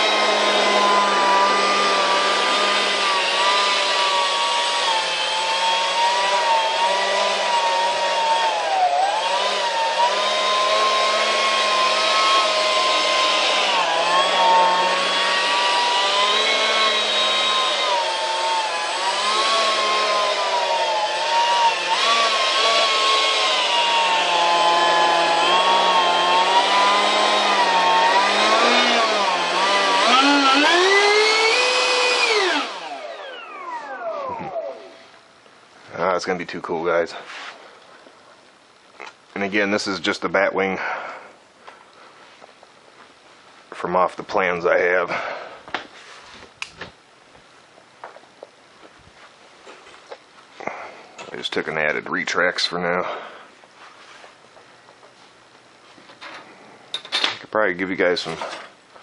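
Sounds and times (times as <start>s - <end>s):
electric ducted fan whine: 0.0s - 59.0s.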